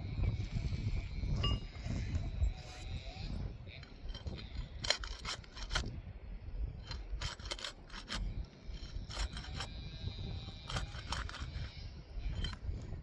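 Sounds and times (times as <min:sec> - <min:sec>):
wind rumble on microphone: 0:00.0 - 0:13.0
shingle seal scraping and cracking: 0:03.7 - 0:06.0, 0:06.8 - 0:13.0.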